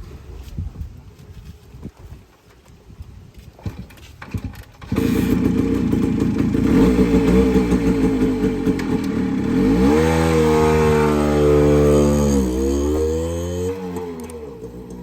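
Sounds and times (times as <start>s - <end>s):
motorcycle engine revving: 3.6s - 15.0s.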